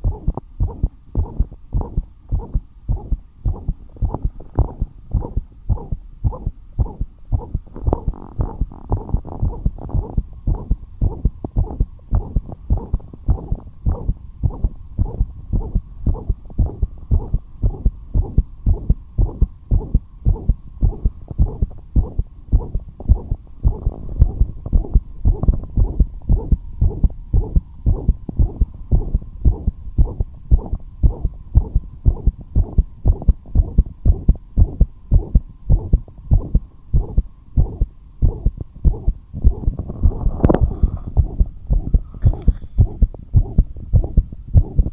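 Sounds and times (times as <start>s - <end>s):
faint hum: 0.0s - 44.9s
heartbeat thumps: 0.0s - 44.9s.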